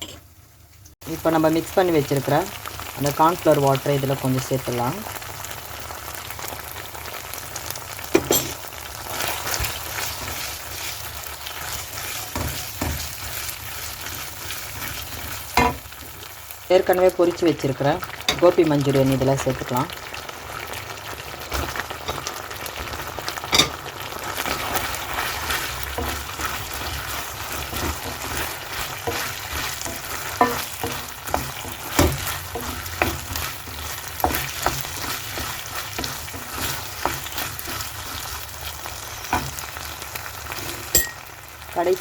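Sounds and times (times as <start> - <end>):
food sizzling in a pan: 0.0 - 42.0
spoon scraping a pan: 8.2 - 16.2, 21.5 - 22.4, 23.3 - 39.9, 40.5 - 41.3.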